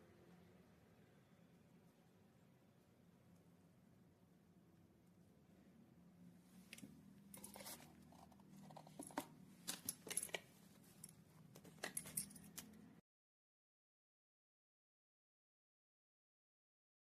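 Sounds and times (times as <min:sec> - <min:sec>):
wristwatch clicks and clinks: 0:06.7 - 0:12.9.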